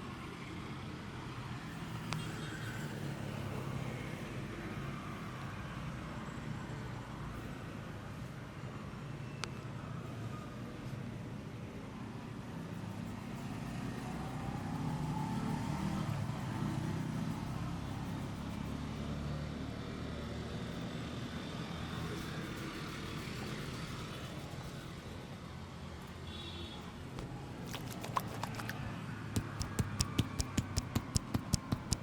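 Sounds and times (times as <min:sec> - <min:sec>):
passing vehicle engine rumble: 0:12.9 - 0:25.6.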